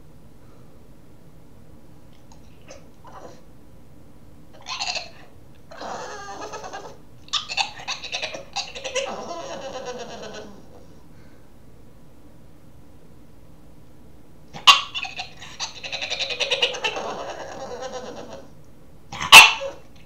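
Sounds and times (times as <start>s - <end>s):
puppy making goat-like noises: 4.6s - 10.9s, 14.6s - 18.5s.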